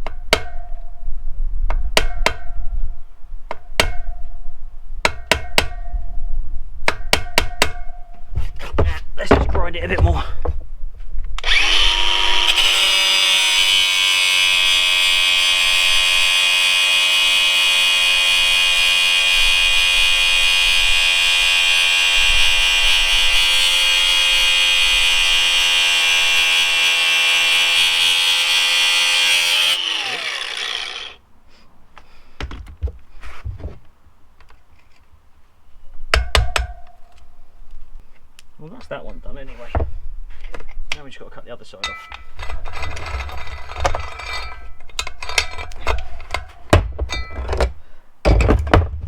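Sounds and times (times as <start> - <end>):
angle grinder grinding chain: 11.4 - 31.2.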